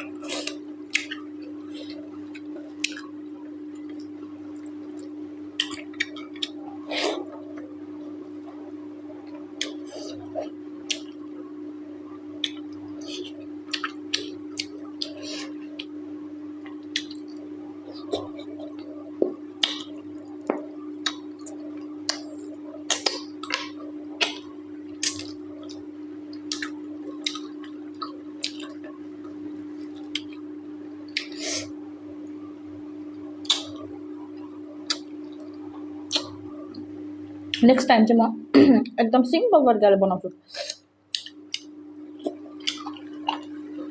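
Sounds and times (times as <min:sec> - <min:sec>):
steady low hum: 0:00.0 - 0:43.9
wet chewing mouth smacks: 0:34.8 - 0:36.4, 0:40.7 - 0:43.5.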